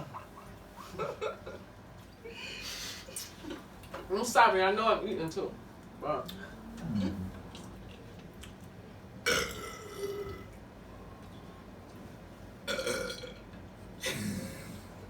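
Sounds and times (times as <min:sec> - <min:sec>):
person burping loudly: 0:06.8 - 0:07.4, 0:09.3 - 0:10.5, 0:12.7 - 0:13.4, 0:14.0 - 0:14.8.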